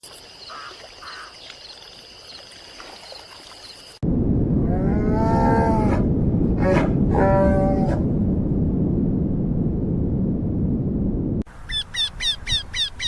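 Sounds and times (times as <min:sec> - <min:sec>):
insects chirping: 0:00.0 - 0:04.0
heavy low noise: 0:04.0 - 0:11.4.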